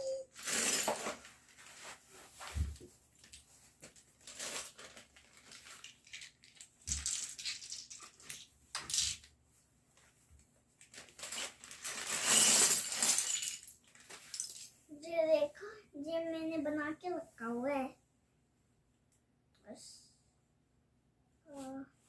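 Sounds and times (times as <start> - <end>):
plastic pieces rustling and clattering: 0.4 - 2.0, 3.2 - 9.3, 10.8 - 14.7.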